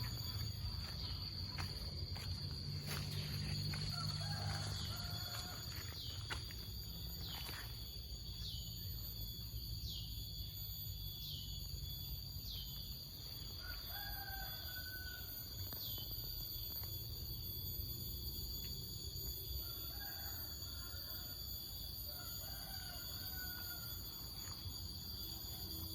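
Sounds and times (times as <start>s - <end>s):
high-pitched drone: 0.0s - 14.1s.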